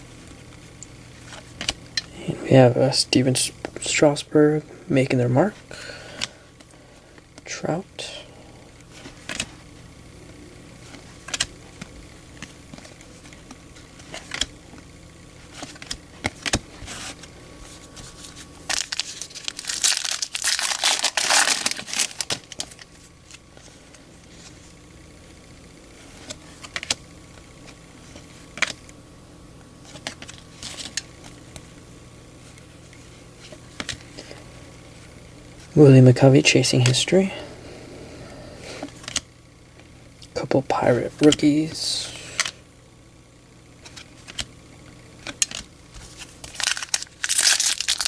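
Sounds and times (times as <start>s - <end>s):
wrapper crinkling and tearing: 18.4s - 22.8s, 45.3s - 48.0s.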